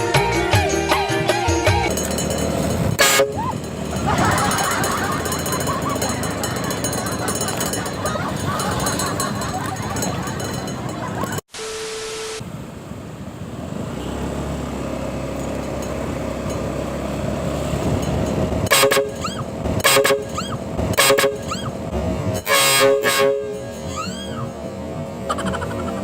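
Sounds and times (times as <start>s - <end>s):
engine humming: 0.0s - 26.0s
two-tone truck horn blasting: 1.9s - 6.5s, 18.6s - 21.7s, 22.4s - 24.2s.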